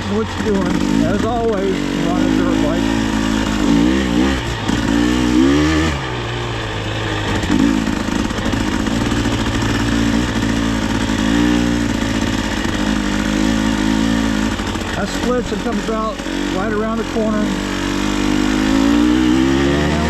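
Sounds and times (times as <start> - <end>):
dirt bike engine revving: 0.0 - 20.0.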